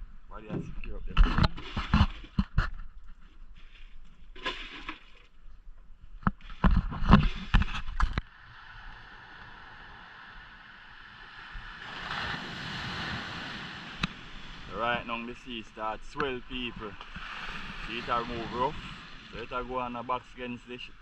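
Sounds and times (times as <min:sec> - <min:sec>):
sea water washing: 0:08.3 - 0:21.0.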